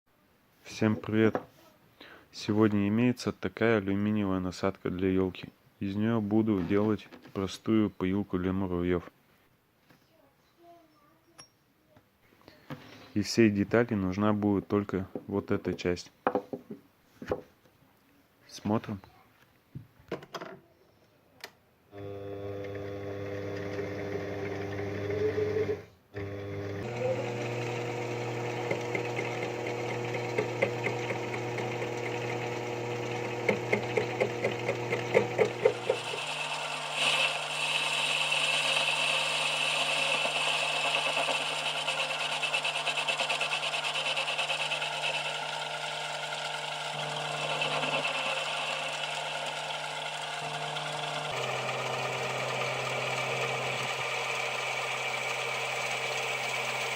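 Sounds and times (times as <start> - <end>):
lathe motor hum: 22.0 - 56.9
tool scraping metal: 34.2 - 45.2.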